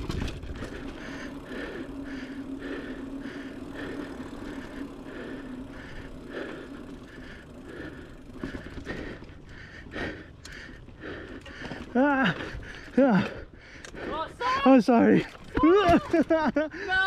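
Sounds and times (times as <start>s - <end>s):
rattling bike parts: 0.0s - 9.8s
bike tyres rumbling on dirt: 0.0s - 16.6s.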